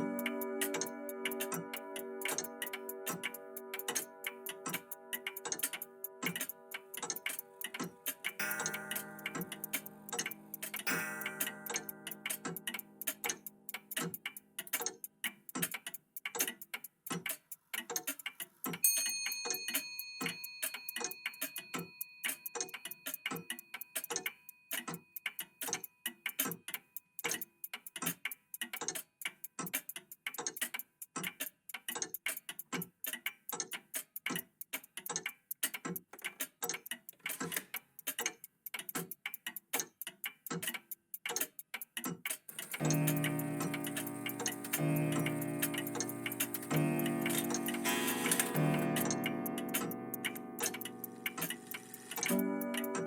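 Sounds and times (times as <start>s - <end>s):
mechanical clocks ticking: 0.0s - 53.0s
high bell chime: 8.4s - 10.0s, 10.8s - 11.7s, 18.8s - 24.7s.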